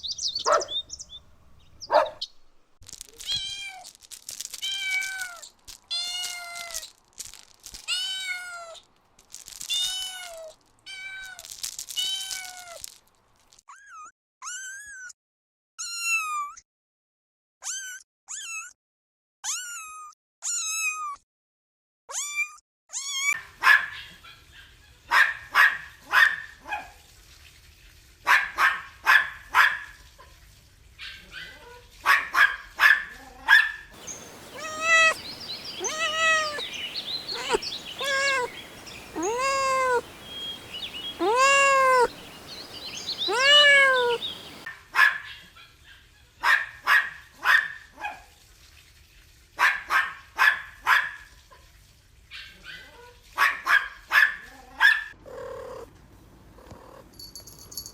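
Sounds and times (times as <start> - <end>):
puppies yapping: 0.2 - 0.9, 1.8 - 2.2, 34.0 - 44.7
kittens meowing: 34.0 - 44.6.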